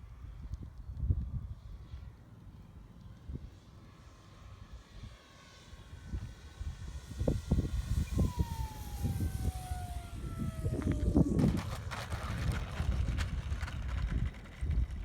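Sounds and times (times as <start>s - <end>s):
electric motor and propeller whine: 1.0s - 15.0s
wind buffeting microphone: 6.8s - 15.0s.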